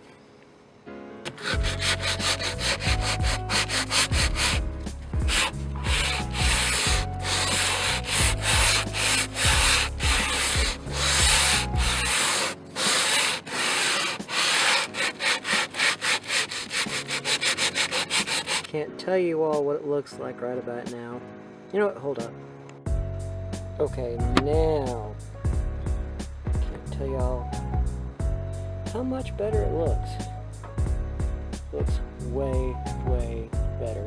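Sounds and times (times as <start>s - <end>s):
sandpaper scratching on wood: 1.3s - 18.7s.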